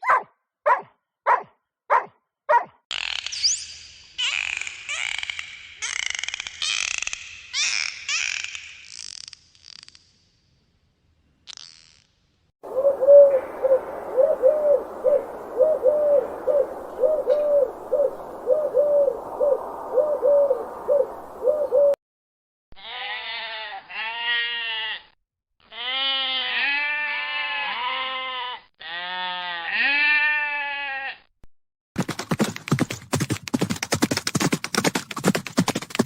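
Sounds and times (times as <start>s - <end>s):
background hiss: 12.6s - 22.0s
animal bleating calls: 22.8s - 31.3s.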